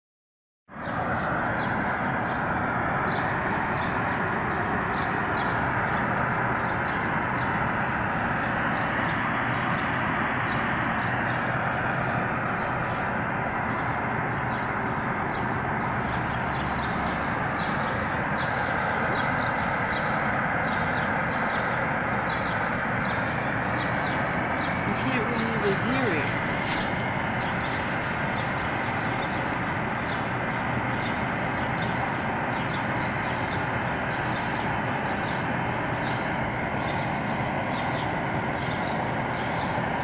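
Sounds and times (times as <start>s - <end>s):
loud rushing noise: 0.8s - 30.5s.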